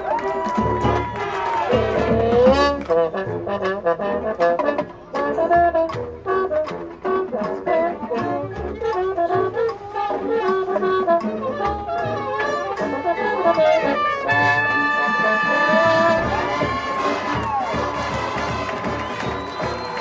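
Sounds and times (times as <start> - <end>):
marching band brass playing: 0.0 - 20.0
low drum beats: 15.7 - 20.0.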